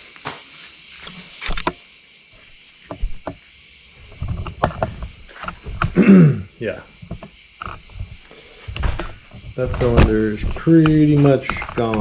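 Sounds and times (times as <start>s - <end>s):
knocks and clicks of tools: 2.9s - 3.4s.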